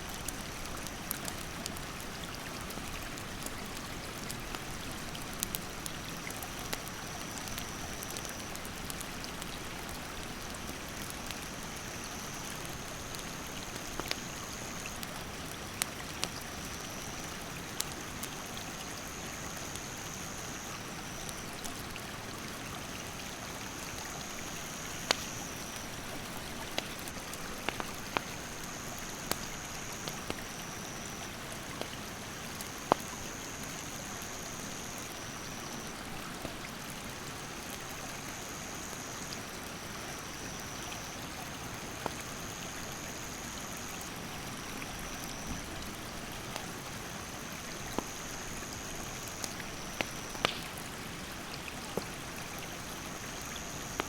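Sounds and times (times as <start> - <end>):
wood fire crackling and popping: 2.7 - 16.9, 23.7 - 30.6, 31.6 - 33.2, 47.8 - 50.9
high insect call: 23.2 - 31.5, 32.1 - 36.0, 42.3 - 51.0, 51.8 - 54.0.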